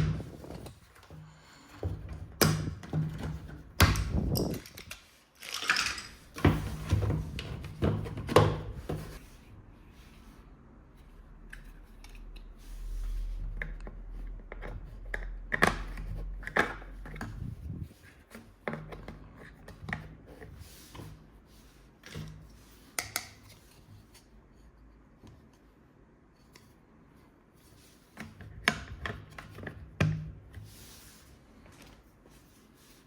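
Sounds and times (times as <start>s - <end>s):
plastic toys clicking and rustling: 4.0s - 6.4s.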